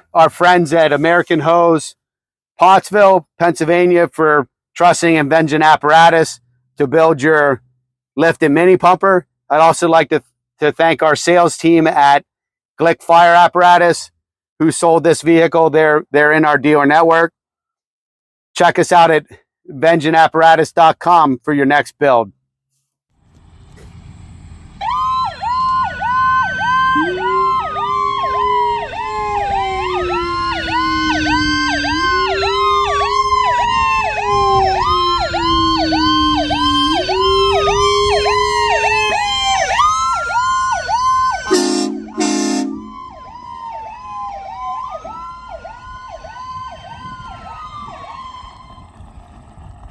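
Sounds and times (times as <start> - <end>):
fire truck sirens wailing and yelping: 24.2 - 49.9
short horn blasts: 41.5 - 43.0.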